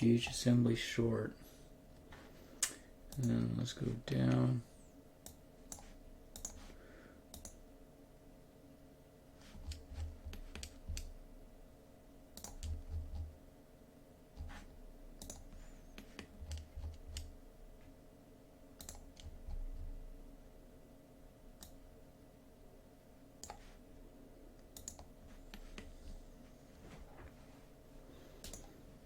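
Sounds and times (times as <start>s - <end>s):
steady electrical hum: 0.0s - 29.0s
computer mouse and keyboard clicks: 5.2s - 6.7s, 7.3s - 7.6s, 9.4s - 11.1s, 12.4s - 13.3s, 14.4s - 17.3s, 18.8s - 19.8s, 23.4s - 23.7s, 24.6s - 26.2s, 28.4s - 28.8s.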